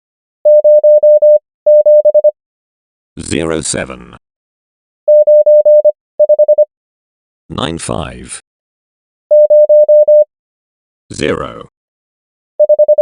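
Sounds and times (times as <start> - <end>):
morse code beeps: 0.5 - 2.4, 5.1 - 6.7, 9.3 - 10.3, 12.6 - 13.0.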